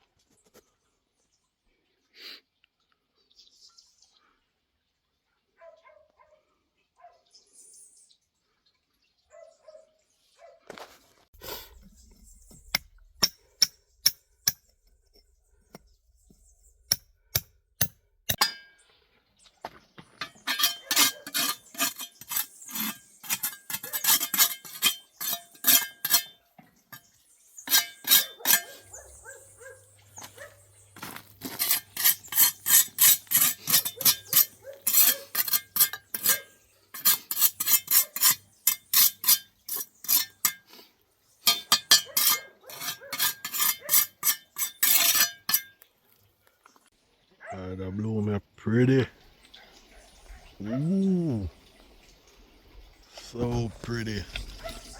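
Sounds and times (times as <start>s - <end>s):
hard objects clinking: 20.2s - 27.1s, 31.0s - 40.7s.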